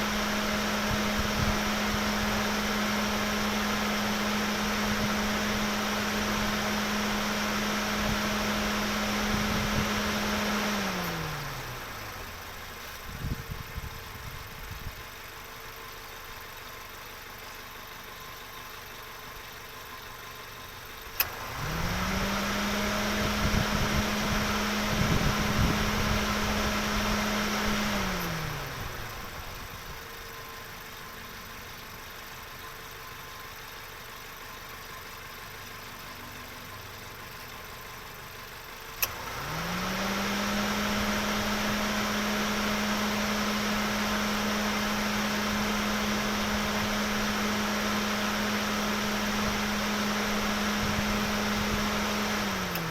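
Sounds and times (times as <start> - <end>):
car engine revving: 21.2 - 29.7, 39.0 - 52.9.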